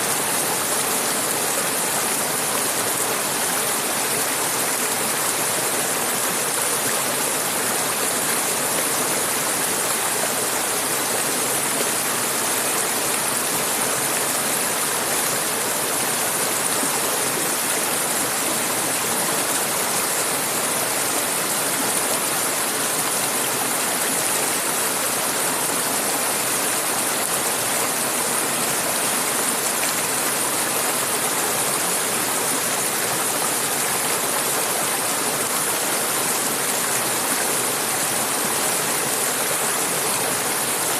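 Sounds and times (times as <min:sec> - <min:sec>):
river water flowing over rocks: 0:00.0 - 0:40.9.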